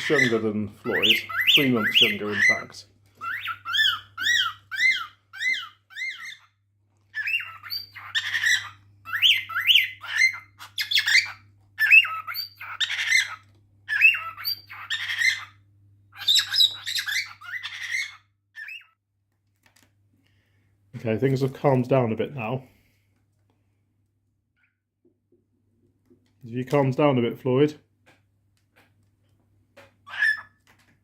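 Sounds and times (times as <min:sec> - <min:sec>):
cockatiel whistling: 0:00.0 - 0:06.5, 0:07.2 - 0:15.6, 0:16.2 - 0:19.0
cockatiel chirps and squawks: 0:00.0 - 0:19.0, 0:30.0 - 0:30.6.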